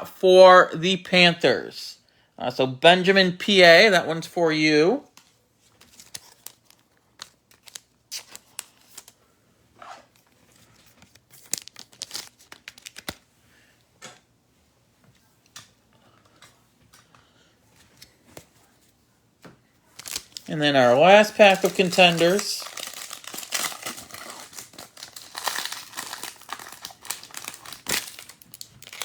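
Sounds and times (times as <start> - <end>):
cards rustling and clicking: 5.1 - 9.2, 9.9 - 13.3, 19.4 - 29.0
wrapper tearing and crinkling: 5.9 - 9.1, 11.3 - 13.2, 19.9 - 29.0.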